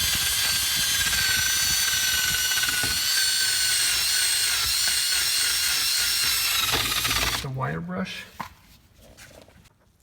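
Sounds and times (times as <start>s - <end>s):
power drill motor whine: 0.0s - 7.4s.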